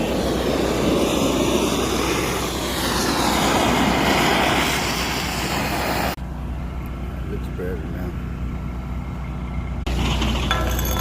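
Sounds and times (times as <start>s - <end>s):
gas torch hissing: 0.0s - 6.2s
low engine hum: 0.0s - 11.0s.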